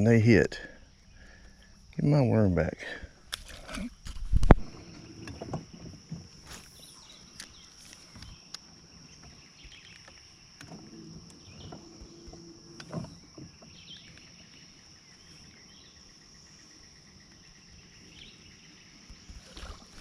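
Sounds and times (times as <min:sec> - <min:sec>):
insects buzzing: 0:00.0 - 0:20.0
gear knocking in boat: 0:04.6 - 0:06.6, 0:09.1 - 0:14.8.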